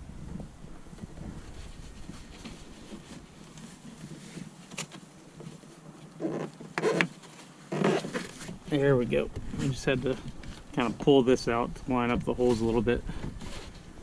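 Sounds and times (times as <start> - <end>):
rustling and scraping: 0.0 - 14.0.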